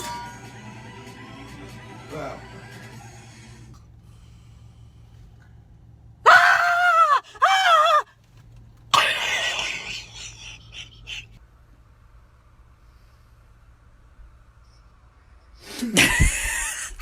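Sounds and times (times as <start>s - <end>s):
person screaming: 6.3s - 8.0s
breathy crying: 6.3s - 8.1s.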